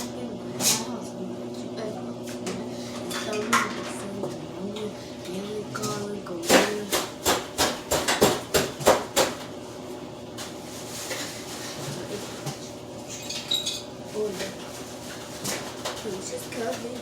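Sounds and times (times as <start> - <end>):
dishes and utensils clattering: 2.9 - 4.1, 11.0 - 14.5.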